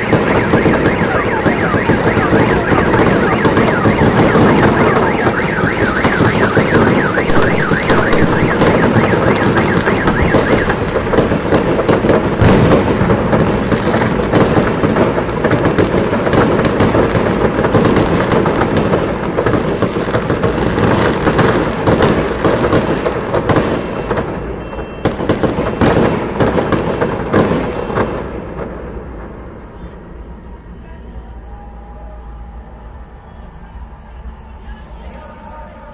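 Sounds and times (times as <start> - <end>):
warbling siren-like wail: 0.0 - 21.9, 29.2 - 35.9
fireworks bangs and crackles: 0.0 - 35.9.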